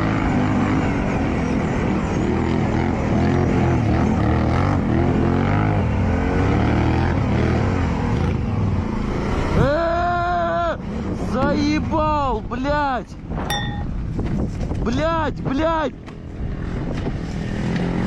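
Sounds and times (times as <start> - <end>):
off-road vehicle engine revving: 0.0 - 10.2, 16.5 - 18.0.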